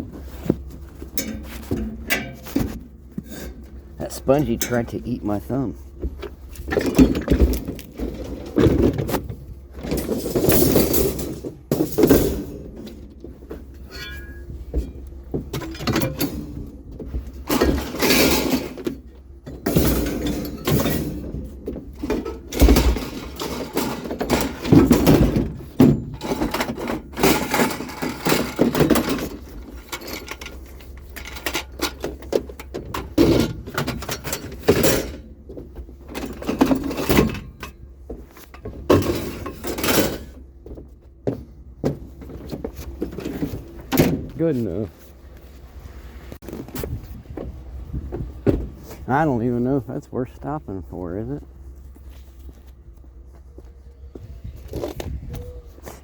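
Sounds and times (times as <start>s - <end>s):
scrap metal clanking and rattling: 0.0s - 52.8s.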